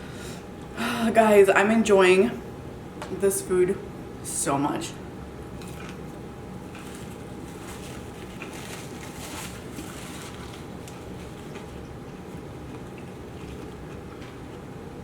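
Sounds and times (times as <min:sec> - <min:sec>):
steady low hum: 0:00.0 - 0:15.0
person chewing food: 0:05.6 - 0:14.8.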